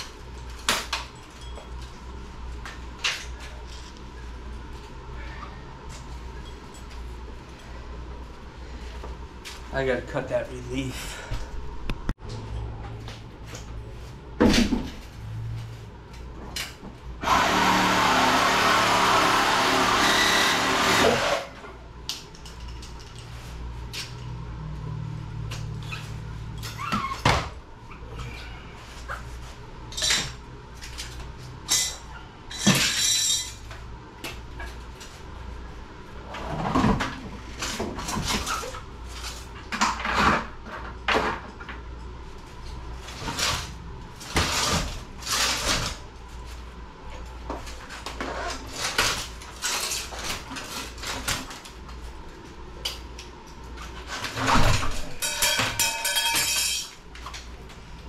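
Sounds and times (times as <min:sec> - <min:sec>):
power tool cutting: 0:17.2 - 0:21.6
metal tools clanking: 0:31.7 - 0:33.6, 0:54.4 - 0:57.0.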